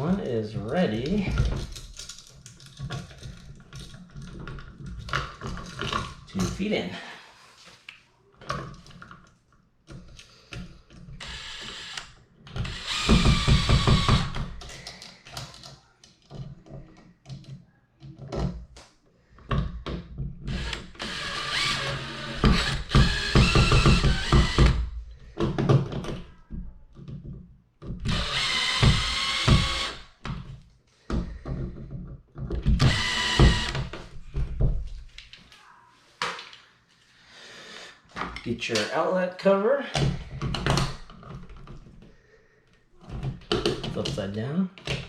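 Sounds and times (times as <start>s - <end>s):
power drill driving screws: 11.2s - 14.5s, 20.5s - 24.8s, 28.0s - 30.2s, 32.8s - 33.9s.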